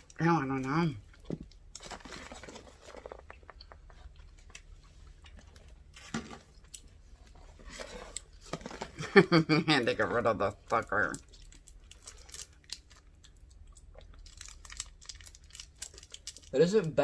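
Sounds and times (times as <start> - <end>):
person chewing a snack: 1.0 - 9.0, 11.1 - 16.5
small clicks and crackles: 10.7 - 17.0.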